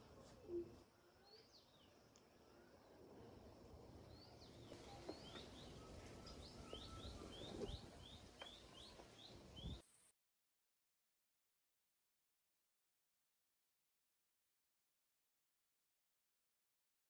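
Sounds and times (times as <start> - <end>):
low background hiss: 0.0 - 10.1
small bird chirping: 4.1 - 9.8.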